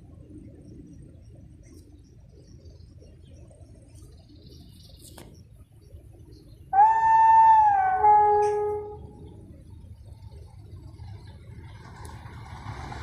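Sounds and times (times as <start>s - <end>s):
locomotive horn two notes: 6.8s - 9.2s.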